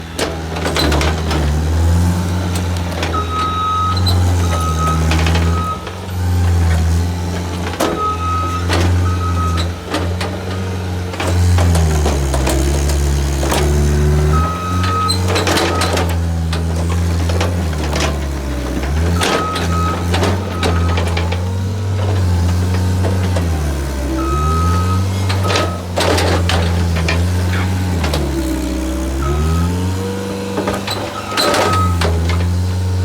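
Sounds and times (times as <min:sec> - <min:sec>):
skid steer engine running: 0:00.0 - 0:33.0
backup alarm beeping: 0:03.1 - 0:07.0, 0:07.9 - 0:09.9, 0:24.1 - 0:26.4, 0:31.1 - 0:32.2.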